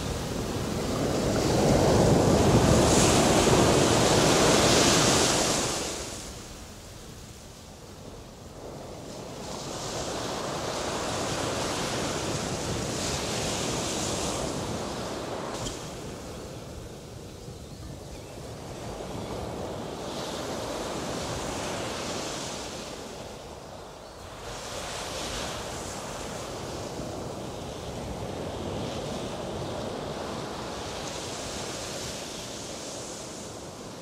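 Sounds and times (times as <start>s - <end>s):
sea waves breaking on shore: 0.0s - 17.3s.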